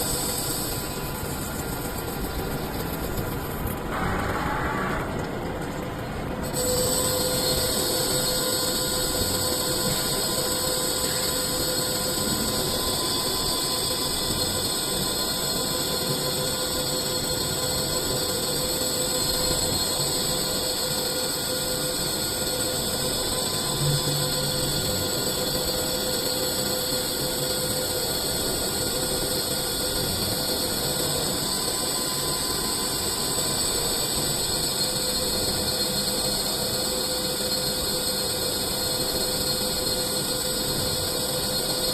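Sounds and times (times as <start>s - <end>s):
cnc machine hissing: 0.0s - 5.3s, 6.4s - 41.9s
faint machine whine: 0.0s - 41.9s.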